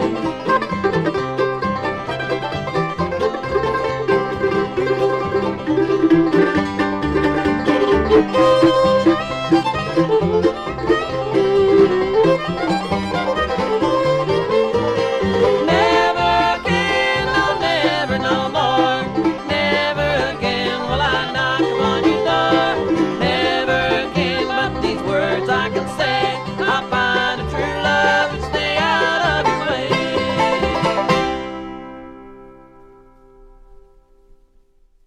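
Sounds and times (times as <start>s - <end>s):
bluegrass string band playing: 0.0s - 34.0s
banjo: 0.0s - 34.3s.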